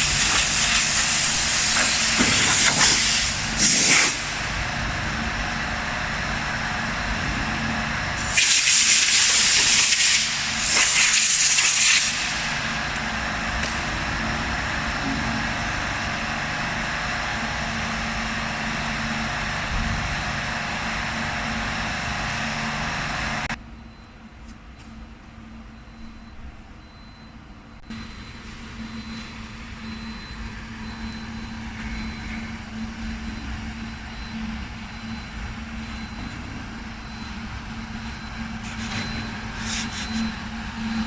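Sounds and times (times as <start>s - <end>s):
compressed air bursts: 0.0s - 4.4s, 8.2s - 12.5s
cnc router humming: 0.0s - 23.6s, 27.8s - 41.0s.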